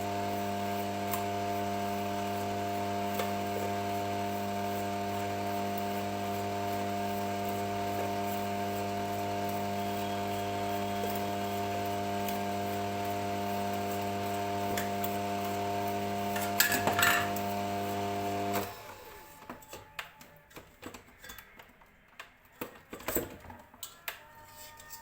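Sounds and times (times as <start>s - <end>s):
electric mixer motor humming: 0.0s - 19.4s.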